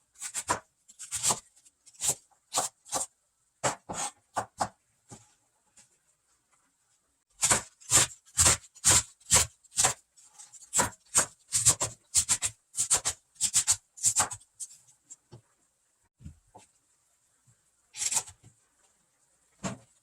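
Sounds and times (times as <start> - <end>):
knife chopping on cutting board: 0.2 - 4.8, 7.4 - 10.0, 10.7 - 14.4.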